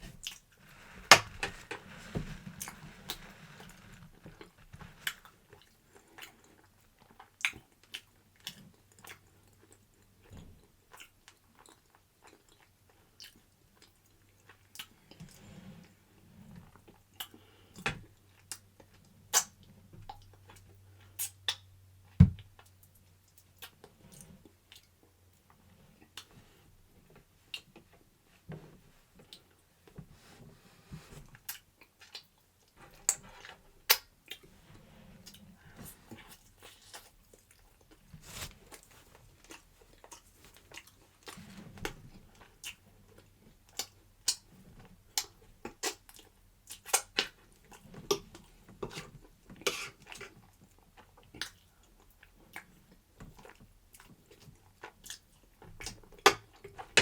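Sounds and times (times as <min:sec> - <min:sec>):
soft wet noise: 0:19.6 - 0:46.1.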